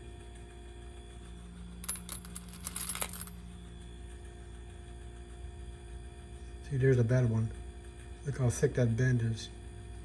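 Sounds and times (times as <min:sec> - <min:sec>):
faint steady hum: 0:00.0 - 0:10.0
brass cartridge cases clinking: 0:01.9 - 0:03.4.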